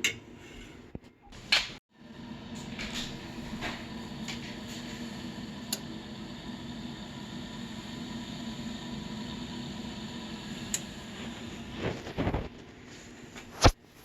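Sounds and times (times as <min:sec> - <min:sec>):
motor hum with hiss: 0:02.0 - 0:12.4.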